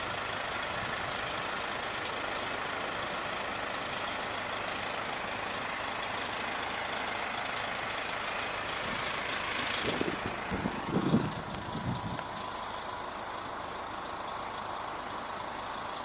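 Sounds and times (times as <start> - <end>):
distant bus engines idling: 0.0 - 16.0
low uneven rumbles: 8.4 - 13.5.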